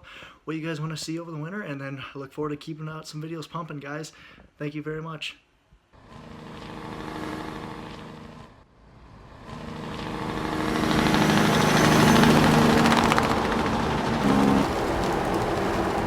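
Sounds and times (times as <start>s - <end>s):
farm machinery engine running: 9.4s - 16.0s.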